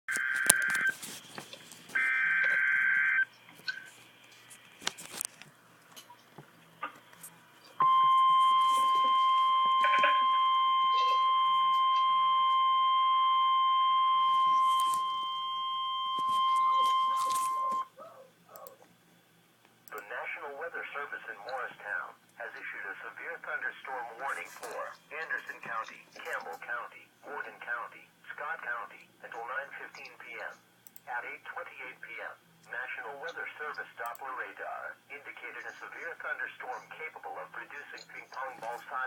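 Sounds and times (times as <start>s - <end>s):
crackling static: 0.1s - 10.1s, 13.7s - 15.3s, 18.7s - 39.0s
steady warning alarm tone: 2.0s - 3.3s, 7.8s - 17.9s.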